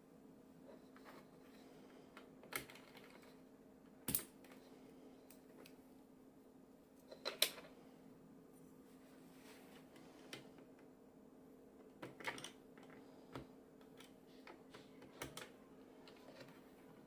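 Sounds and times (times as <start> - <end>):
faint steady hum: 0.0 - 17.0.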